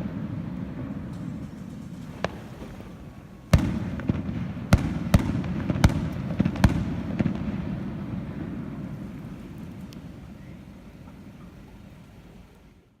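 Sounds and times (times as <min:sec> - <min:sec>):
low rumble of echoing blasts: 0:00.0 - 0:13.0
firework shells bursting: 0:00.9 - 0:07.6.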